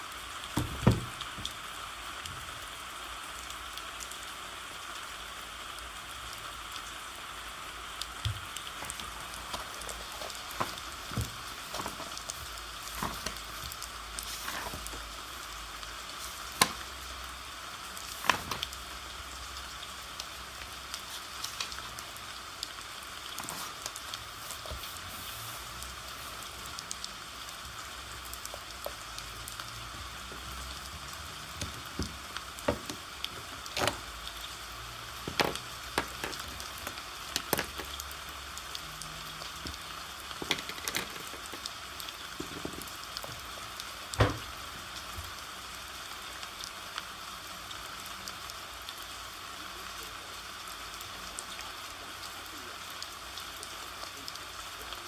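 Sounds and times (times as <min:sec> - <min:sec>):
rain hiss: 0:00.0 - 0:36.0.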